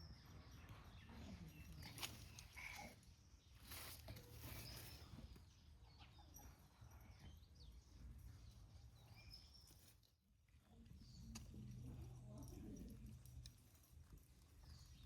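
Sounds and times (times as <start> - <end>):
soft rustles: 3.6 - 5.3
faint bird chirps: 3.6 - 8.0.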